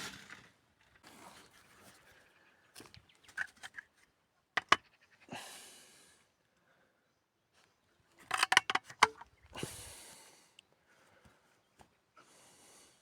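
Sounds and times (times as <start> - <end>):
brick and tools scraping: 4.6 - 4.8, 8.2 - 9.2.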